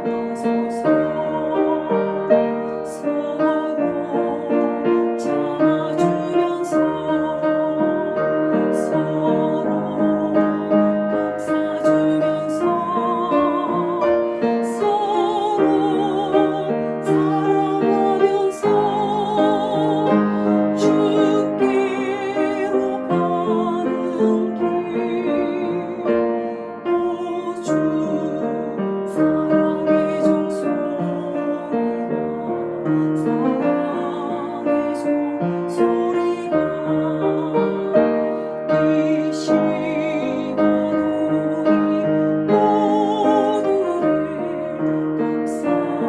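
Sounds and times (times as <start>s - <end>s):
piano accompaniment: 0.0s - 46.0s
woman singing choral song: 0.0s - 46.0s.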